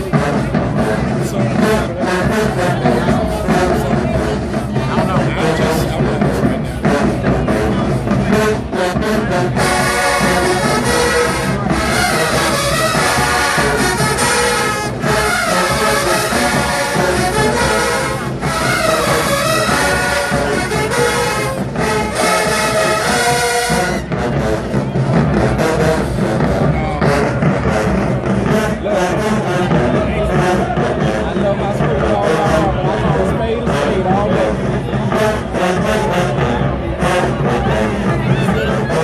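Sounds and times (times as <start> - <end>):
brass section playing chords: 0.0 - 39.0
marching band drums: 0.0 - 39.0.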